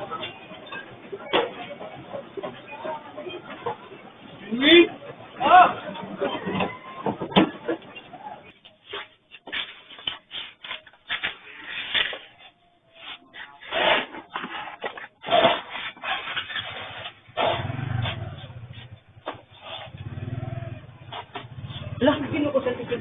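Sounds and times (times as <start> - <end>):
shelving and merchandise rattling: 0.0 - 23.0.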